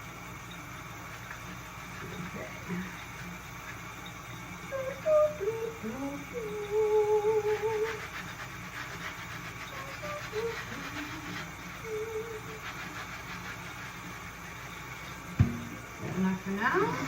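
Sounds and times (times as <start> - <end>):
faint scrubbing: 1.0 - 3.4, 4.7 - 17.0
person humming a tune: 4.7 - 8.0, 9.8 - 12.6.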